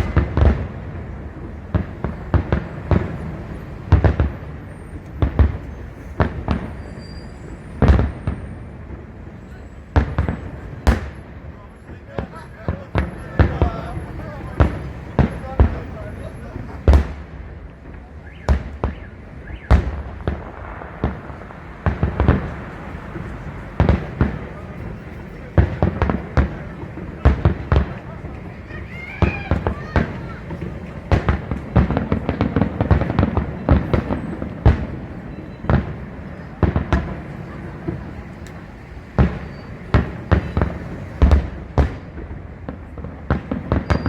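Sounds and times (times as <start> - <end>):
firework shells bursting: 37.9 - 44.0.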